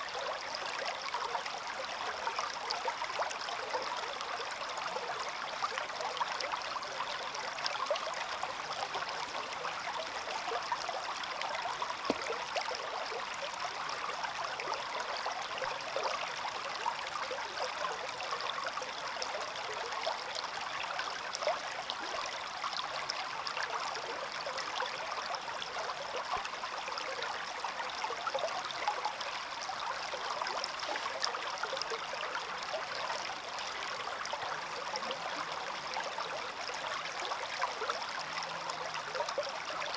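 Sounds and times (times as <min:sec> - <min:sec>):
stream babbling over stones: 0:00.2 - 0:16.3.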